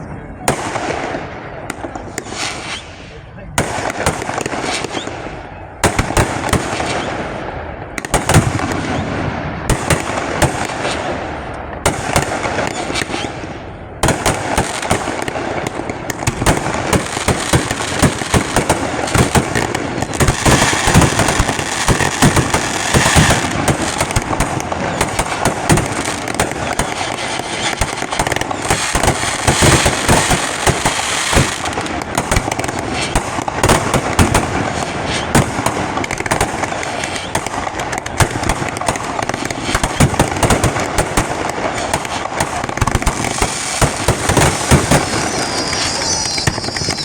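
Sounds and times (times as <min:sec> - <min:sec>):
firework crackling: 0:00.4 - 0:47.0
firework shell bursts: 0:43.2 - 0:47.0.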